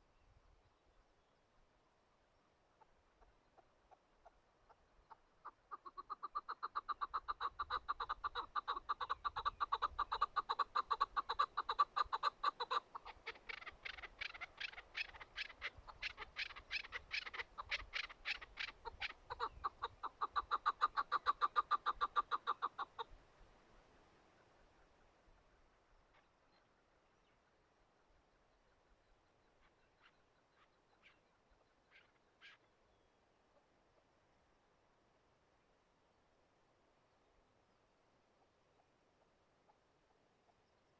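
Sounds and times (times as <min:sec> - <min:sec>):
partridge clucking calls: 0:02.8 - 0:23.2, 0:29.6 - 0:32.7.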